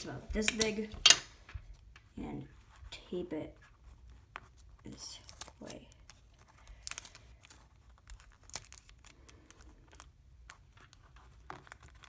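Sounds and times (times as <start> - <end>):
sticky tape crackling: 0.0 - 2.3, 4.3 - 12.0
paper crinkling and rustling: 3.6 - 12.0.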